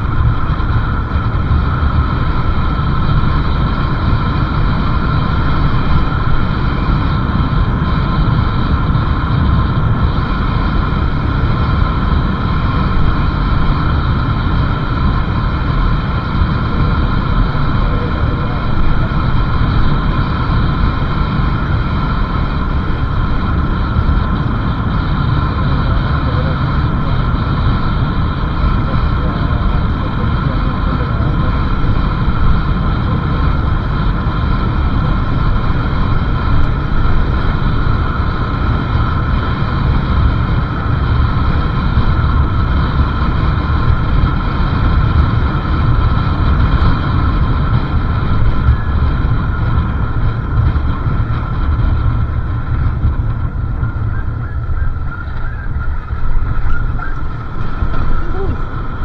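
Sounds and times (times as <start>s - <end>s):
motorcycle engine drone: 0.0s - 59.0s
wind rushing on microphone: 0.0s - 59.0s.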